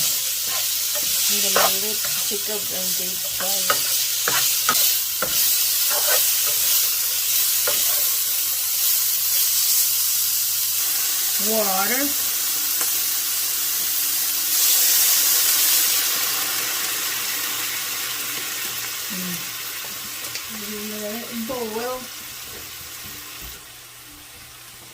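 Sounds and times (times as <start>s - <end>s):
water sizzling in hot pan: 0.0s - 24.0s
pork chops sizzling in pan: 0.0s - 24.9s.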